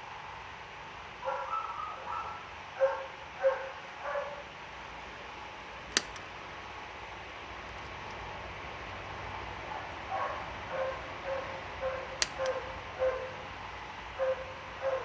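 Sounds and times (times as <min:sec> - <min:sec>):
dog barking: 0:01.2 - 0:04.5, 0:09.7 - 0:13.4, 0:14.2 - 0:15.0
sharp click: 0:05.9 - 0:06.3, 0:12.2 - 0:12.6.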